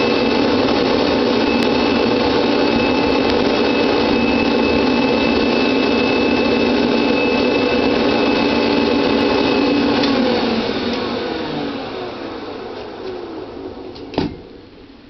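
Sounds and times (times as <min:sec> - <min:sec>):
vacuum cleaner motor whining: 0:00.0 - 0:14.6.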